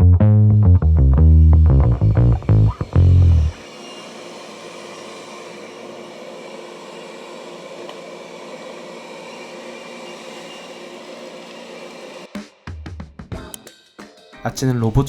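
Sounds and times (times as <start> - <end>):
robot vacuum cleaner whirring: 2.7 - 12.6.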